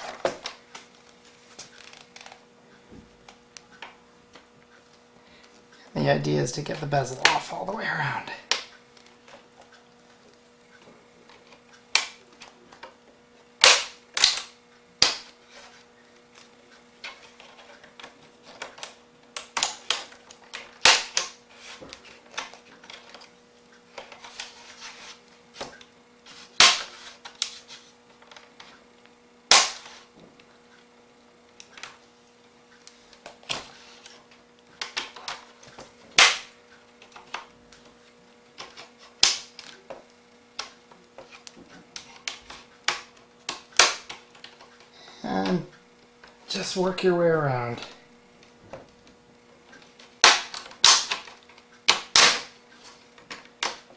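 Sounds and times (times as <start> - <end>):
plastic clips snapping: 40.6 - 44.9, 50.2 - 52.5.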